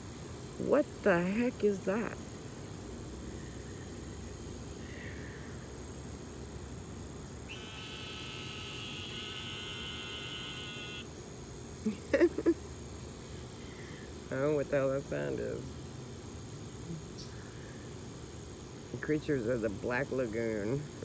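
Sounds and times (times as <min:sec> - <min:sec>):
faint high whine: 0:07.4 - 0:11.2
animal trilling: 0:07.5 - 0:11.1.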